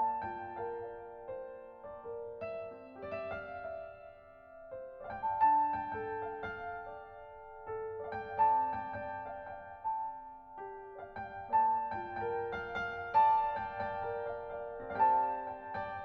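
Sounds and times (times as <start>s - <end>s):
gentle piano melody: 0.0s - 16.0s.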